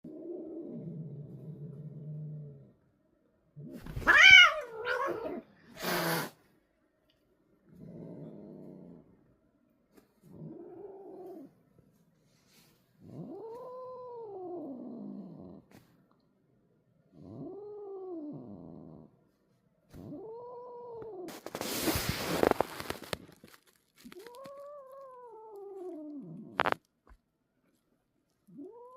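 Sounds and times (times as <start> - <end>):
cat hissing: 3.8 - 6.4, 21.0 - 23.2
cat yowling: 3.9 - 6.2.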